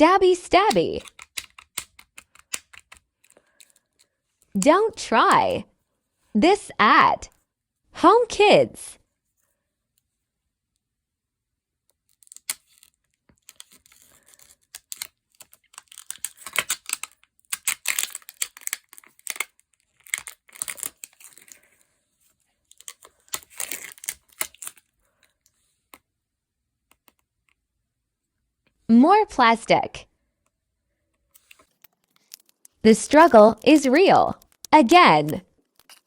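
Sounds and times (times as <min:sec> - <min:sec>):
plastic packaging tearing and crinkling: 0:12.0 - 0:21.9, 0:22.6 - 0:25.0, 0:35.6 - 0:36.0.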